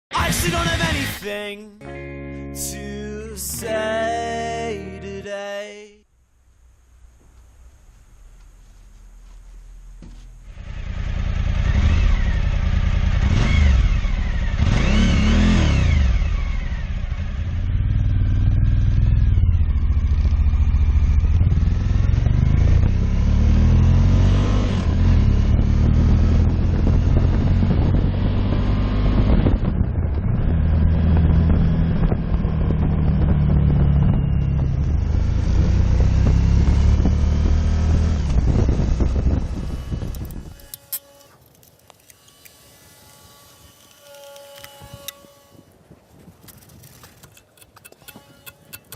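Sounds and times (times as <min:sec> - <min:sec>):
motorcycle engine revving and idling: 0:06.6 - 0:41.3.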